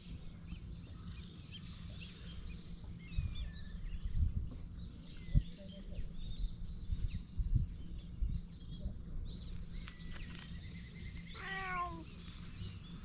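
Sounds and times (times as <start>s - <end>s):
small birds chirping: 0.0s - 13.0s
cat meowing: 11.4s - 12.1s.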